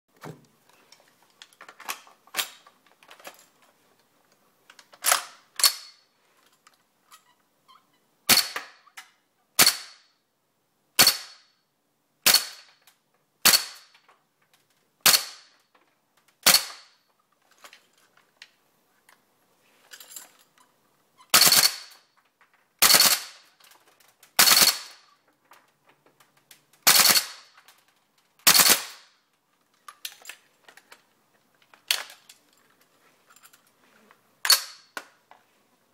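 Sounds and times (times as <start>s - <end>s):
airsoft rifle shots: 8.3s - 8.8s, 9.6s - 10.0s, 11.0s - 11.5s, 12.2s - 12.7s, 13.4s - 13.9s, 15.0s - 15.5s, 16.4s - 16.9s, 21.3s - 22.0s, 22.8s - 23.4s, 24.4s - 25.0s, 26.8s - 27.5s, 28.4s - 29.1s.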